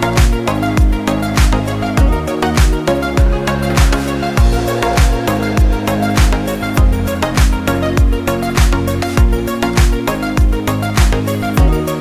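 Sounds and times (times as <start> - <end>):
deep kick drum: 0.2 - 11.8
sustained chords: 0.6 - 9.6.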